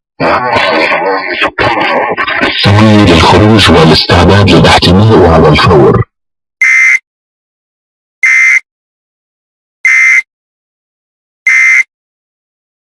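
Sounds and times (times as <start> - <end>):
short electronic data bursts: 11.5 - 11.9.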